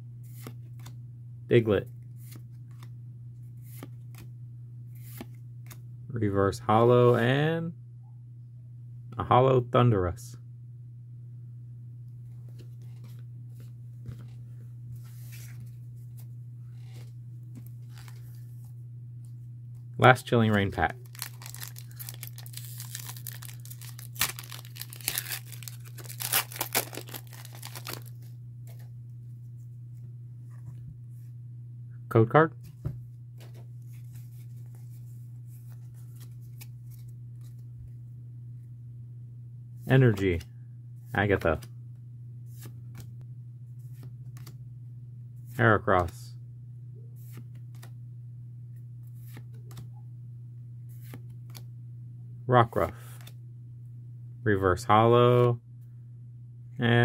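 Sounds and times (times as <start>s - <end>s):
low hum: 0.0s - 57.0s
trading cards being handled: 0.2s - 0.9s, 3.6s - 4.3s, 4.9s - 5.8s, 12.3s - 18.7s, 20.4s - 28.9s, 32.7s - 37.8s, 47.2s - 47.9s, 49.1s - 49.9s, 50.9s - 51.7s
trading cards rustling and tapping: 20.5s - 28.8s.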